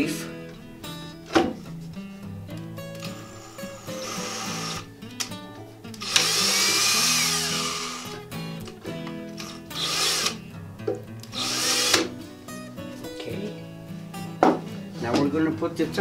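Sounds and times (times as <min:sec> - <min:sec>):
background music: 0:00.0 - 0:16.0
power drill running: 0:03.0 - 0:04.9, 0:06.0 - 0:08.2, 0:09.4 - 0:10.4, 0:11.3 - 0:12.1.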